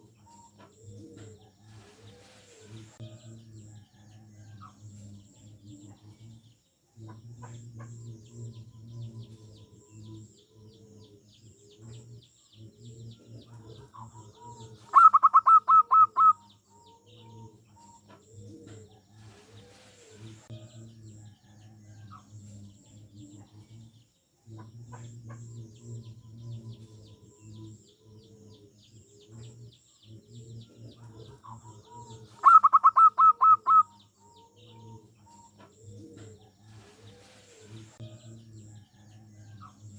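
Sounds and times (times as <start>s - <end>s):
small birds chirping: 0.0s - 39.9s
doves cooing: 7.3s - 20.4s, 24.6s - 38.0s
rapid high dove notes: 32.4s - 33.9s.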